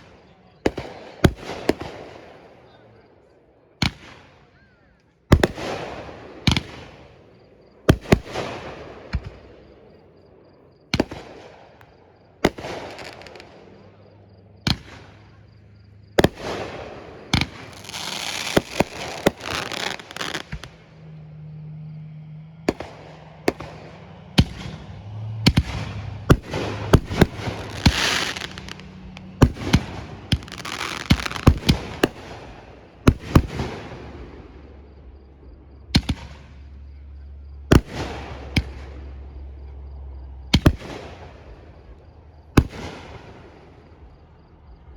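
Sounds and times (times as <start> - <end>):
fireworks booming: 0.0 - 2.4, 5.3 - 7.1, 7.8 - 44.8
fireworks crackling and sizzling: 12.4 - 13.7, 16.2 - 21.5, 22.6 - 34.2.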